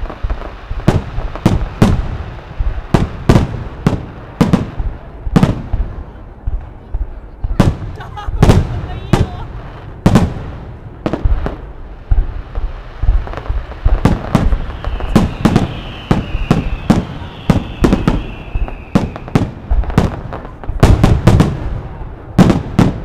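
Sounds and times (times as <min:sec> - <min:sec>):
high falling whistle: 0:14.5 - 0:19.4.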